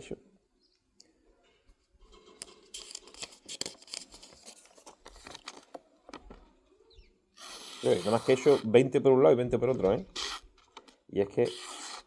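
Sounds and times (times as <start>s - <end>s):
knife slicing paper: 7.4s - 8.6s.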